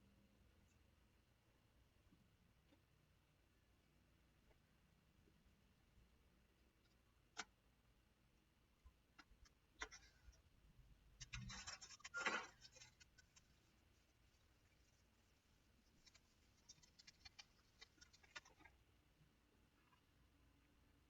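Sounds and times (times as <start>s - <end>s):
scraping rustle: 11.2s - 18.8s.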